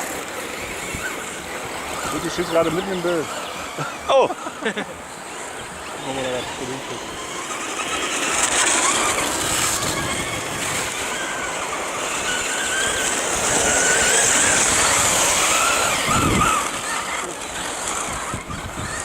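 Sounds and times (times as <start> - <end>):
electric motor whine: 0.0 - 19.0
hiss of tyres and drivetrain: 4.9 - 18.8.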